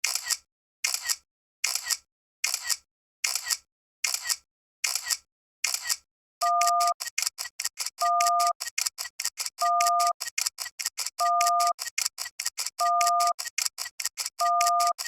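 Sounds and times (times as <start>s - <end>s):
two-tone beep: 6.4s - 7.0s, 8.0s - 8.6s, 9.6s - 10.2s, 11.2s - 11.8s, 12.8s - 13.4s, 14.4s - 15.0s.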